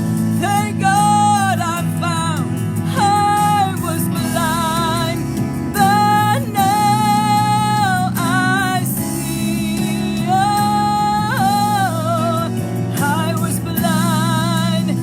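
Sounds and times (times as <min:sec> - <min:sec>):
keyboard chords: 0:00.0 - 0:15.0
person singing with vibrato: 0:00.0 - 0:15.0.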